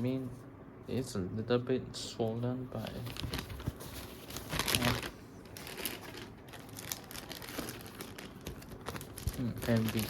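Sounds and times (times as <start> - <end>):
plastic packaging crinkling: 2.7 - 10.0.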